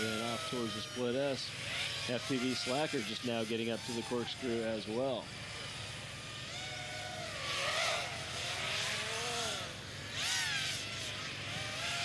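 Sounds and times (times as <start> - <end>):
quadcopter motors whining: 0.0 - 12.0.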